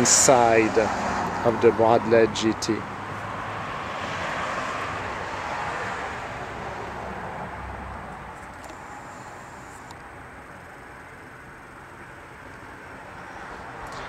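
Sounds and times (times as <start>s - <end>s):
passing vehicle rushing: 0.0s - 7.8s.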